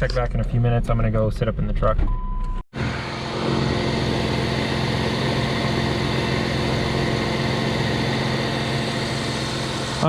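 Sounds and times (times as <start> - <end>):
car engine idling: 2.8 - 10.0.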